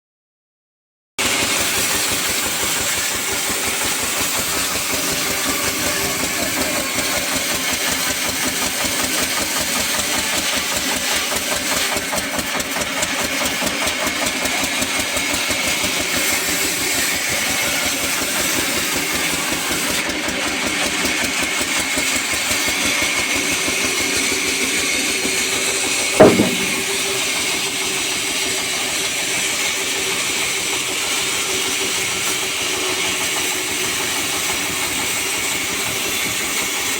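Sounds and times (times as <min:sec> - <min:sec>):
sawmill machinery chugging: 0:01.2 - 0:36.9
loud knock: 0:26.2 - 0:27.0.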